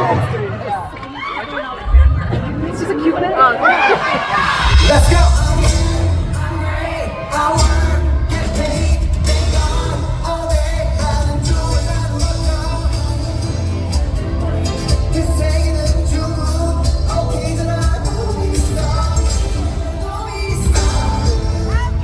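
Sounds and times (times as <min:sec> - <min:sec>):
pop song with heavy bass beat: 0:03.9 - 0:22.0
person singing: 0:04.6 - 0:22.0.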